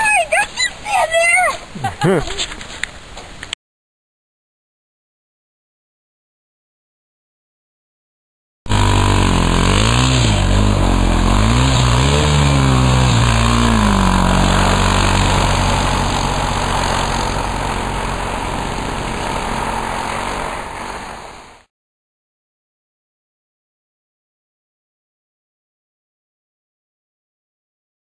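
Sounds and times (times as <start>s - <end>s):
engine revving: 8.7s - 21.7s.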